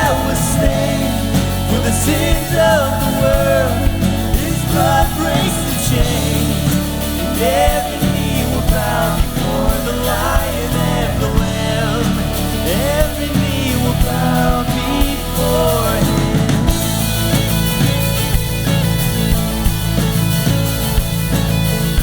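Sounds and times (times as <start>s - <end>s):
person singing melody: 0.0s - 17.4s
drum hits: 0.0s - 22.0s
sustained bass notes: 0.0s - 22.0s.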